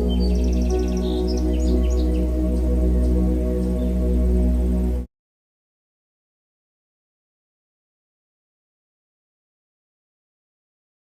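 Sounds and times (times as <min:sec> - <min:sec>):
ambient new-age music: 0:00.0 - 0:05.1.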